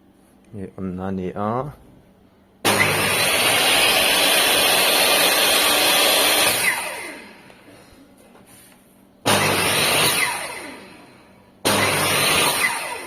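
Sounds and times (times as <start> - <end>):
table saw running and winding down: 2.7 - 7.3, 9.3 - 11.0, 11.7 - 13.0.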